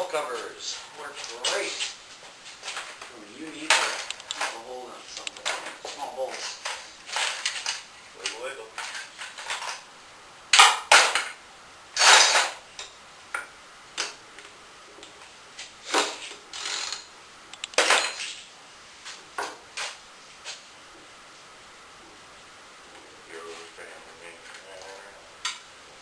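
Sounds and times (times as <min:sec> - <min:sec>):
metal tools clinking and clattering: 0:17.8 - 0:18.4.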